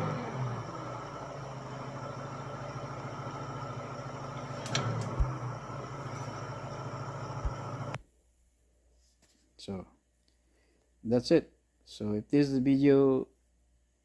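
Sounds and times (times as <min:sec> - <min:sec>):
car engine idling: 0:00.0 - 0:08.0.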